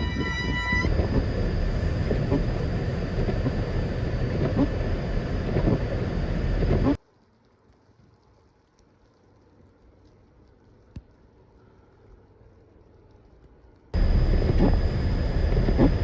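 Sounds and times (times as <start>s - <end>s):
heavy low rumble: 0.0s - 7.0s, 14.0s - 16.0s.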